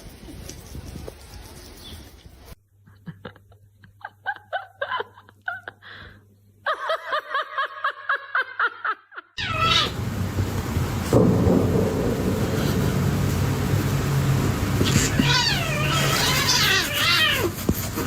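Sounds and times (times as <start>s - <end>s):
cat chirping meows: 9.4s - 10.0s, 14.8s - 17.6s
cat falling cry: 9.4s - 10.0s, 14.8s - 17.9s
loud noise: 9.4s - 17.5s.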